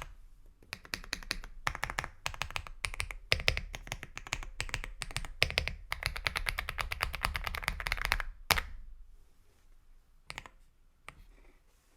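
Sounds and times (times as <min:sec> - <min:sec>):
mechanical keyboard typing: 0:00.7 - 0:08.3.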